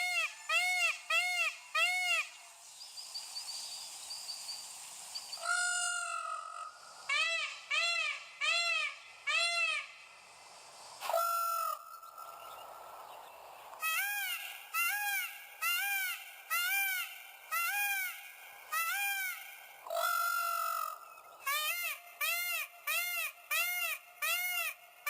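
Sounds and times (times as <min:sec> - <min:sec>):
peafowl calling: 0:00.0 - 0:02.4, 0:05.4 - 0:09.9, 0:11.0 - 0:12.4, 0:13.8 - 0:24.8
small bird chirping: 0:02.2 - 0:05.6.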